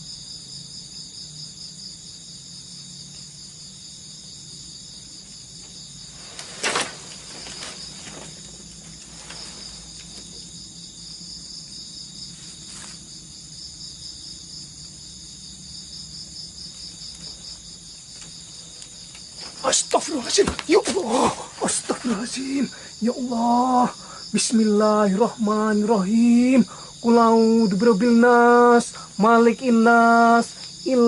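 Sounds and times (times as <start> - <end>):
crickets chirping: 0.0 - 31.0
faint knocks or rustles: 5.6 - 10.5.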